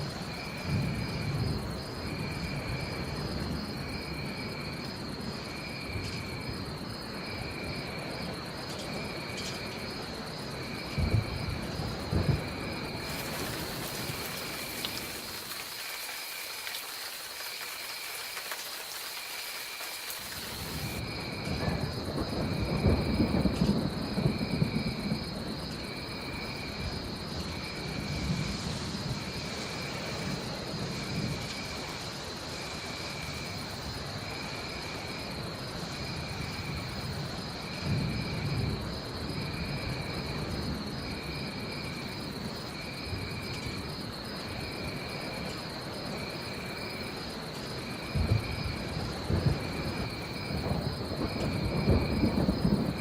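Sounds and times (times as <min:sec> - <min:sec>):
thunder rumbling: 0:00.0 - 0:04.4, 0:10.0 - 0:32.0, 0:36.0 - 0:42.1, 0:48.0 - 0:53.0
rain hiss: 0:00.0 - 0:53.0.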